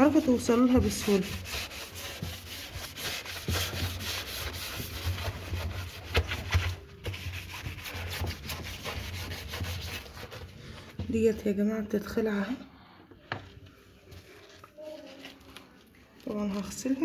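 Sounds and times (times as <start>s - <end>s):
hand scrubbing rubbing strokes: 0.0s - 11.0s.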